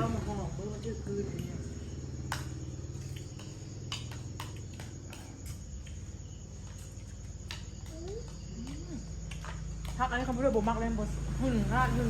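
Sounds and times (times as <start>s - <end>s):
crickets chirping: 0.0s - 12.0s.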